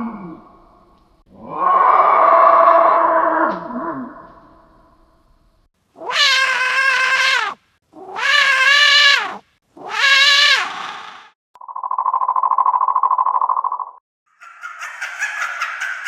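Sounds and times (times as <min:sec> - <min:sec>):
cat-like alien creature calls: 0:06.0 - 0:11.2.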